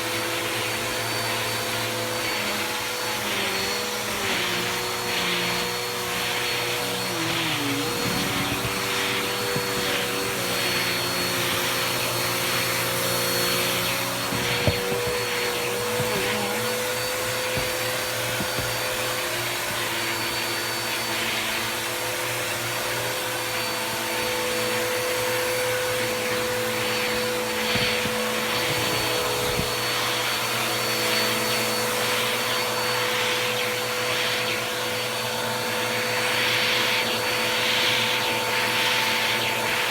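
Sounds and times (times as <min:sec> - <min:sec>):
vacuum cleaner motor whine: 0:00.0 - 0:39.9
brush swishing over sheets: 0:02.2 - 0:21.4, 0:24.7 - 0:30.6.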